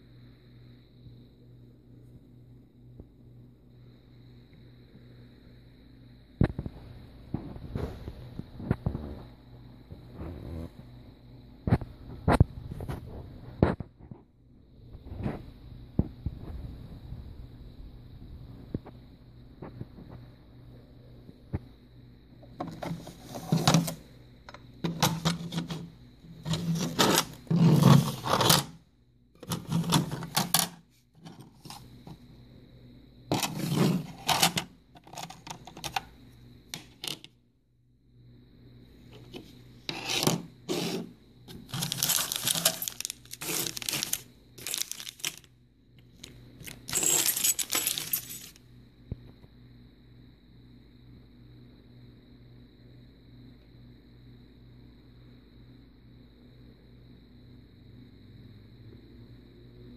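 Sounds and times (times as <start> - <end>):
scraping and rustling handling noises: 22.6 - 24.0, 24.8 - 28.8, 29.4 - 32.2, 33.3 - 36.0, 39.2 - 45.5, 46.2 - 48.6.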